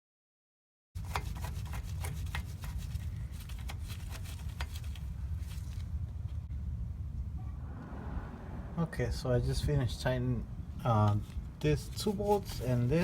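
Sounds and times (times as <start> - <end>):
low rumble: 6.2 - 10.8.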